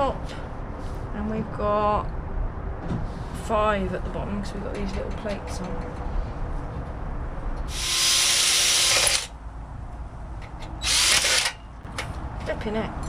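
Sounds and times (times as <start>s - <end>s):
electric drill bursts: 7.7s - 9.3s, 10.8s - 11.6s.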